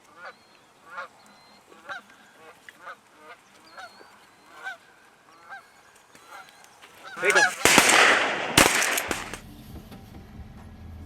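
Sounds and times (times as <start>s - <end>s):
geese honking: 7.0s - 9.3s.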